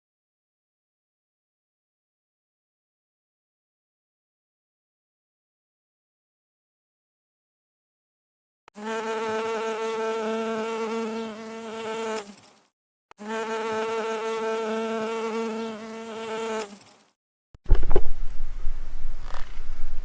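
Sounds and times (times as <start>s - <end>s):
insect wings buzzing: 8.7s - 17.2s.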